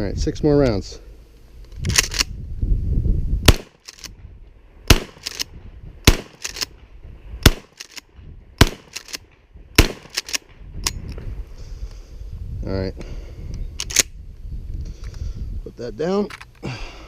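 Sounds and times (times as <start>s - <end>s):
shotgun shots: 3.5s - 3.9s, 4.8s - 8.0s, 8.6s - 10.6s
shotgun pump clacking: 6.3s - 6.7s.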